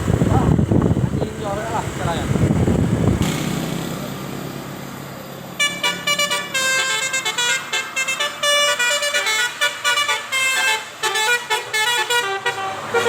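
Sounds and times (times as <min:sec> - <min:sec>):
multi-tone air horn tune: 0:05.6 - 0:13.0.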